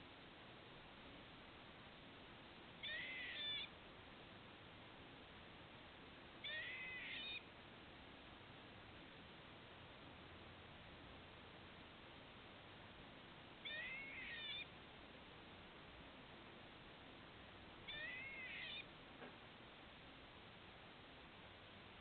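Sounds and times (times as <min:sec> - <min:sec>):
squirrel giving high-pitched calls: 0:02.8 - 0:03.8, 0:06.4 - 0:07.5, 0:13.6 - 0:14.8, 0:17.8 - 0:18.9.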